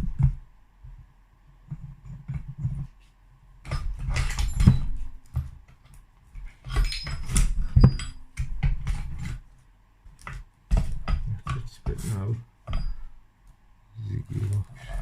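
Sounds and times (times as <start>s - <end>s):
knocks and metallic rattles: 3.6s - 5.6s, 6.4s - 9.4s.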